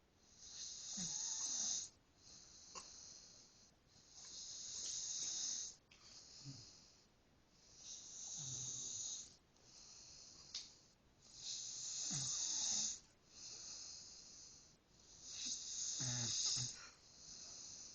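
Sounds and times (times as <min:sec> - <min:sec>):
man snoring: 0:00.4 - 0:02.0, 0:04.3 - 0:06.8, 0:07.8 - 0:09.3, 0:11.3 - 0:13.0, 0:15.2 - 0:16.9.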